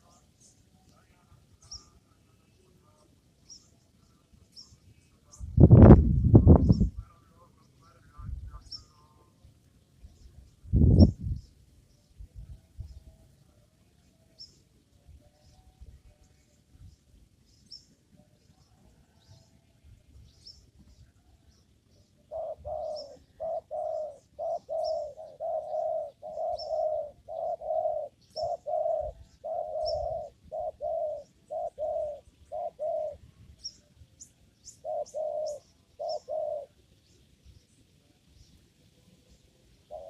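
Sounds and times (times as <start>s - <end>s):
small birds chirping: 0.0s - 13.2s, 13.8s - 40.0s
dove cooing: 22.2s - 33.3s, 34.8s - 36.8s.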